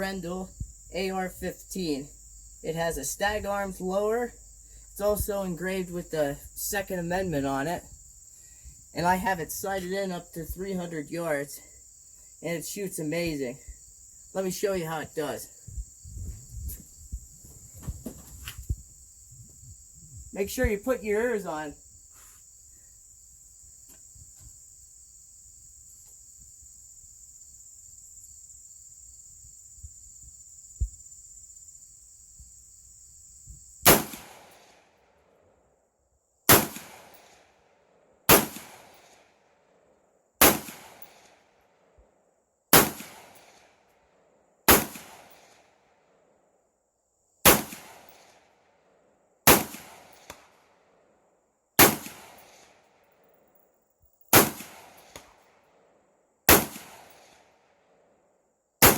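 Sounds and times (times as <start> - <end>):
crickets chirring: 0.0 - 58.9
rifle shots with echo: 33.9 - 34.8, 36.5 - 37.3, 38.3 - 39.2, 40.4 - 41.3, 42.7 - 43.6, 44.7 - 45.4, 47.4 - 48.2, 49.5 - 50.6, 51.8 - 52.8, 54.3 - 55.4, 56.5 - 57.4.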